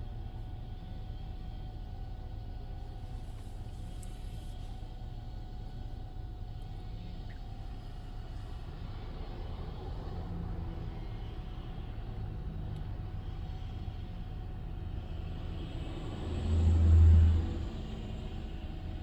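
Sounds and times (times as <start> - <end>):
low engine rumble: 0.0 - 19.0.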